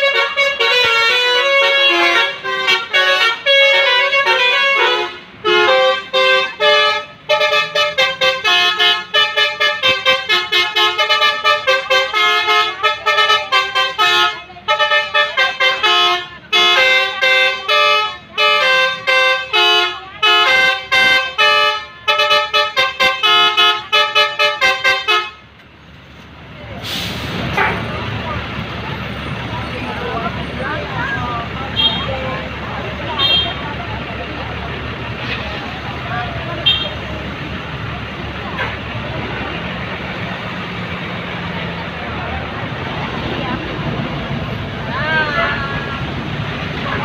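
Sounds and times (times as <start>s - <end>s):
multi-tone bus horn tune: 0.0s - 25.6s, 29.9s - 34.7s, 36.2s - 37.4s, 38.0s - 41.7s.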